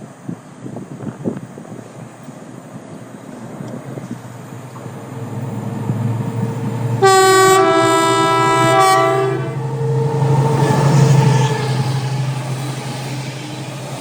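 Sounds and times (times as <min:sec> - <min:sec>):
diesel locomotive passing: 0:00.0 - 0:14.0
two-tone train horn: 0:06.8 - 0:12.1.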